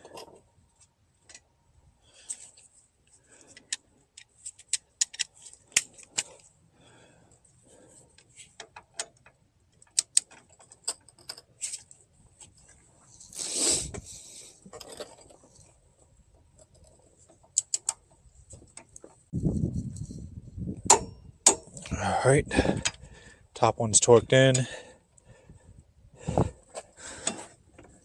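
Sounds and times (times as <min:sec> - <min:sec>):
hand tools clicking and rattling: 0:03.5 - 0:06.4, 0:08.6 - 0:11.8.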